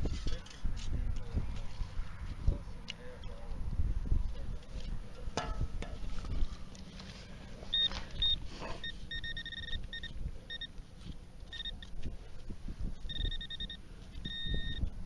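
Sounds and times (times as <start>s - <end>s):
wind rumbling on microphone: 0.0s - 6.7s, 9.2s - 15.0s
metal detector beeping: 7.7s - 10.8s, 11.4s - 12.0s, 13.1s - 15.0s.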